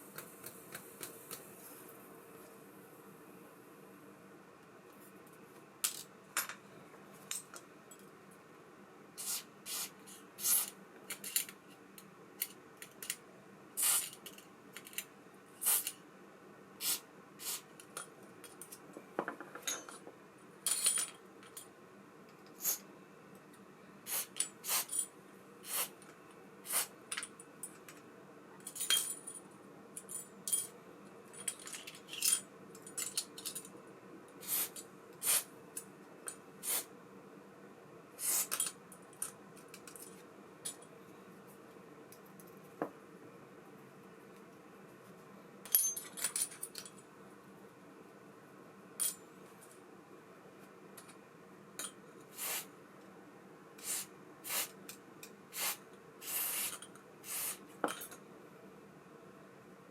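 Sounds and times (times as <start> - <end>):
faint steady hum: 0.0 - 59.9
metal parts clinking on hard surface: 20.7 - 21.7, 31.4 - 33.7, 45.7 - 47.0.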